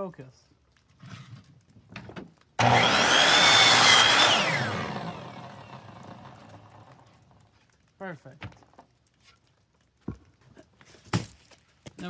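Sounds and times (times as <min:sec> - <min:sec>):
power tool whining: 0:02.6 - 0:07.4.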